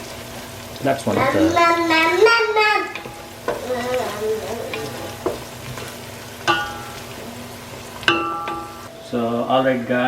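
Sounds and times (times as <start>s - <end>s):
onions sizzling in oil: 0.0s - 9.3s
utensil knocking against pot: 3.0s - 3.7s, 4.7s - 7.1s, 8.0s - 8.9s.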